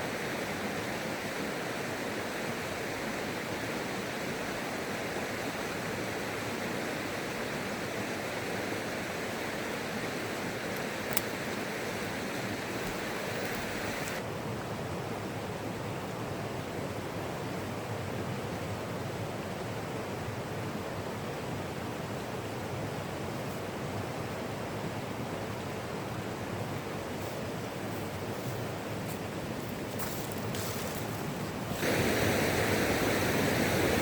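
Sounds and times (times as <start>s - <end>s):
river water rushing: 0.1s - 14.2s, 25.5s - 34.0s.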